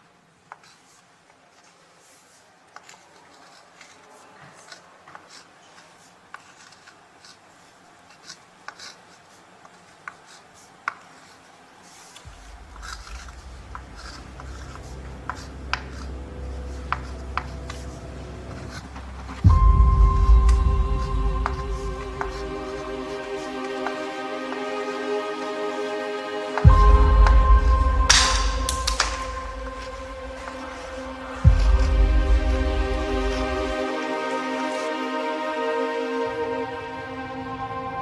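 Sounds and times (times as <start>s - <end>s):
pen scratching while writing: 2.0s - 19.0s
low drone: 12.3s - 38.0s.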